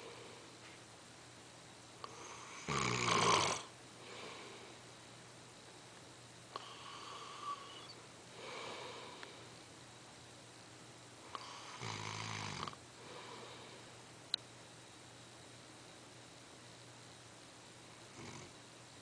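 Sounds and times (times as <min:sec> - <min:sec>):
man snoring: 0:02.1 - 0:04.6, 0:06.6 - 0:09.2, 0:11.3 - 0:13.7, 0:18.1 - 0:18.6.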